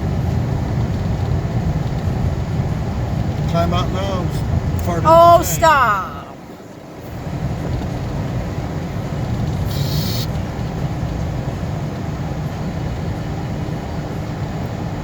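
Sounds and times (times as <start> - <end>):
vehicle rumble inside cab: 0.0 - 15.0
brief hiss: 9.7 - 10.4.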